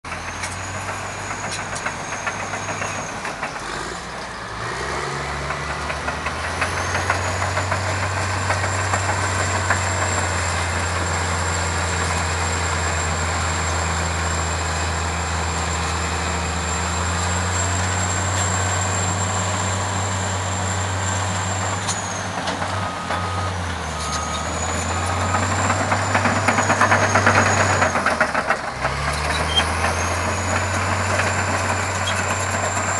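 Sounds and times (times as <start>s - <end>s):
heavy diesel engines under load: 0.0s - 32.9s
back-up alarm beeps: 22.7s - 27.7s.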